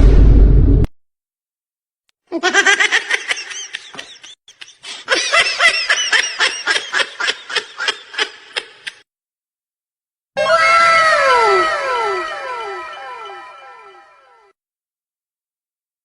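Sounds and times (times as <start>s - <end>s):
person laughing: 2.3s - 9.0s.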